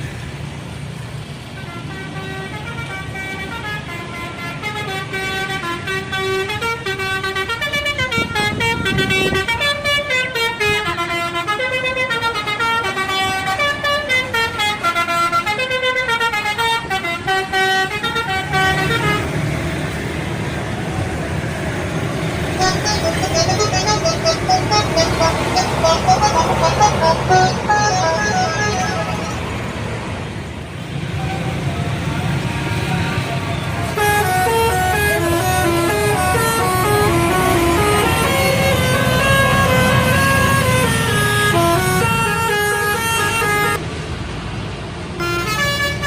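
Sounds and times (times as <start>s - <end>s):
bus engine: 0.0s - 46.0s
road noise: 0.0s - 46.0s
musical air horn melody: 22.5s - 29.8s, 33.9s - 43.8s, 45.2s - 46.0s.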